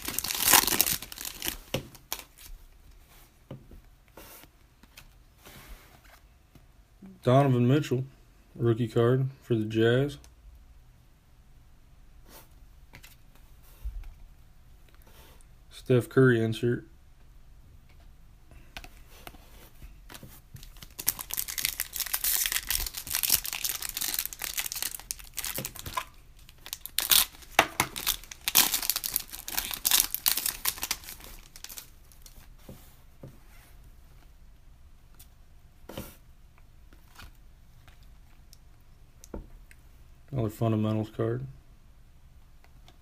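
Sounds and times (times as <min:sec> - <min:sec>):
wrappers tearing and crinkling: 0:00.0 - 0:02.5, 0:20.6 - 0:32.4.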